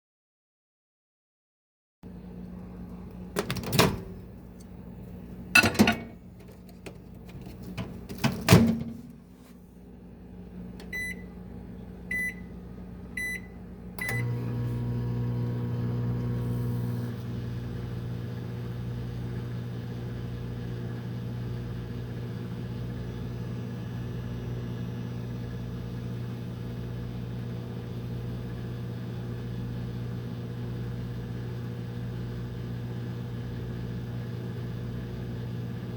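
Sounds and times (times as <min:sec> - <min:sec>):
microwave humming: 0:02.1 - 0:35.9
microwave door clicks and knocks: 0:03.4 - 0:04.3, 0:05.6 - 0:06.2, 0:07.6 - 0:09.0
microwave short beeps: 0:05.6 - 0:06.2, 0:10.8 - 0:11.4, 0:12.1 - 0:12.6, 0:13.2 - 0:14.6.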